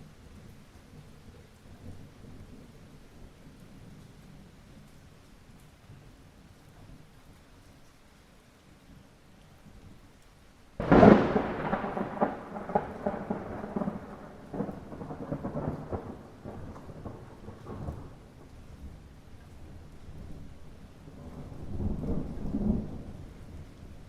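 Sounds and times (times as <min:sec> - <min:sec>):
light rain: 0:00.0 - 0:24.0
thunderclap rolling and crackling: 0:10.8 - 0:24.0.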